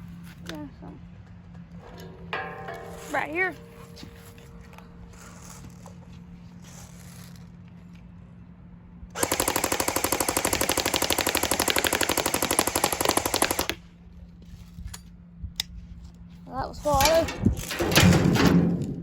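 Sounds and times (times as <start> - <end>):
airsoft gun full-auto burst: 9.2 - 13.8.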